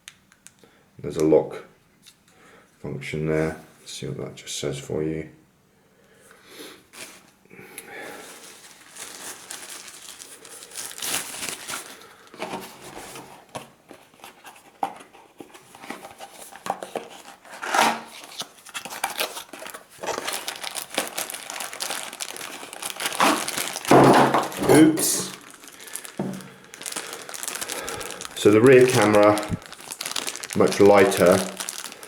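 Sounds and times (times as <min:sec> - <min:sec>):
packaging crinkling and rustling: 0:06.9 - 0:07.4, 0:08.1 - 0:32.0.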